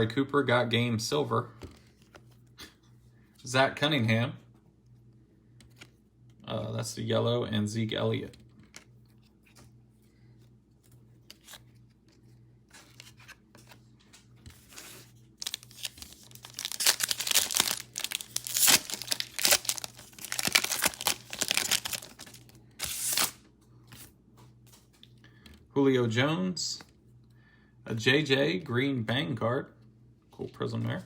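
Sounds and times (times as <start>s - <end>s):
wrapper tearing and crinkling: 14.6s - 23.4s.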